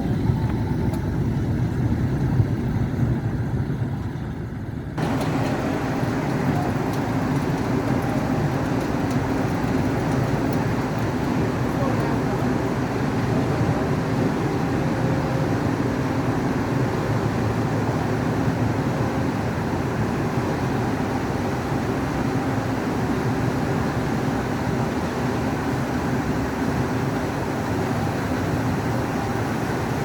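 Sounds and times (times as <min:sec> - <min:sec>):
machinery droning: 0:00.0 - 0:16.0.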